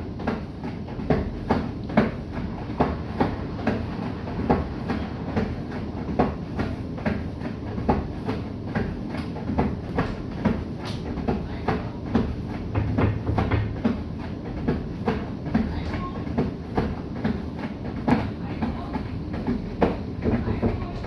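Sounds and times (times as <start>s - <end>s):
washing machine drum humming: 0.0s - 21.0s
washing machine thump: 9.6s - 14.0s.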